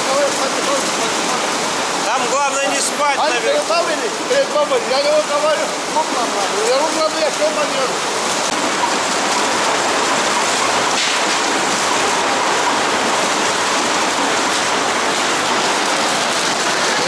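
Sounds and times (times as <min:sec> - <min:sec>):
potatoes rattling on conveyors: 0:06.5 - 0:17.0.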